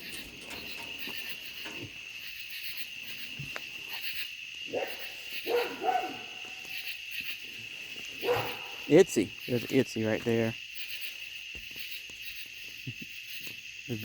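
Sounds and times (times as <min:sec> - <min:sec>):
night insects droning: 0:00.0 - 0:14.0
dog barking: 0:04.7 - 0:06.7, 0:08.2 - 0:08.9.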